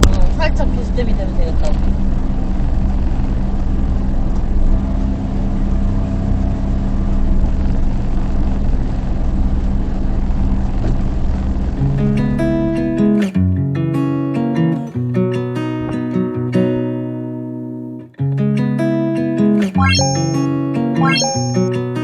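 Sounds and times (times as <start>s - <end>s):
motorhome engine running: 0.0s - 13.6s
acoustic guitar music: 11.8s - 22.0s.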